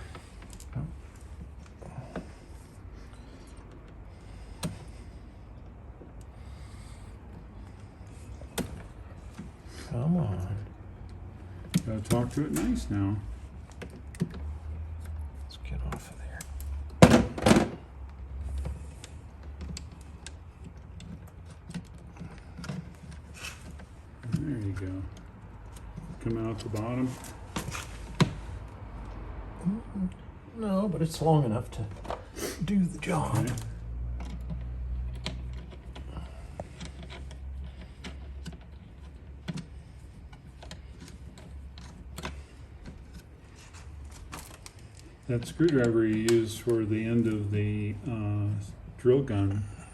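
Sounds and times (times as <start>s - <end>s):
clicks and taps of wire work: 18.0s - 29.2s, 33.0s - 47.5s.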